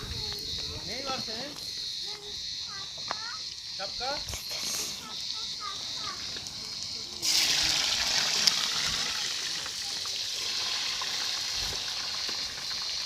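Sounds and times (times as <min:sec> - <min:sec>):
water running: 0:07.2 - 0:13.0.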